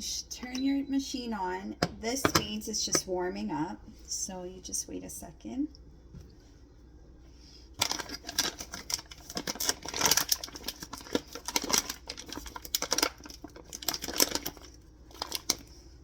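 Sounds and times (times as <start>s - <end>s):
hard objects clicking and clattering: 7.8s - 15.6s.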